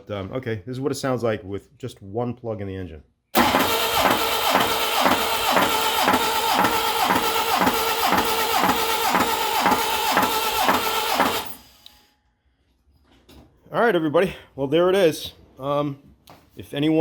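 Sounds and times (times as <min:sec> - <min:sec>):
starter motor drone: 0:03.4 - 0:12.0.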